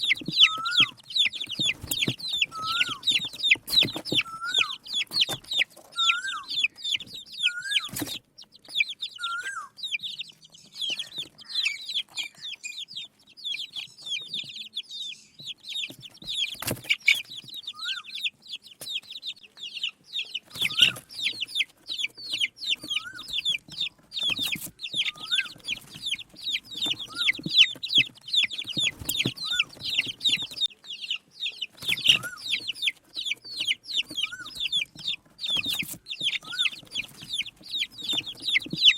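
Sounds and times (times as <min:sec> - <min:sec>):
baby chicks peeping: 0:00.0 - 0:38.9.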